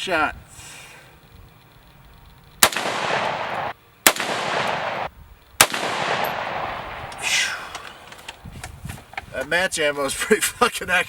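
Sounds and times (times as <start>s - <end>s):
rifle shots echoing: 2.6s - 8.3s.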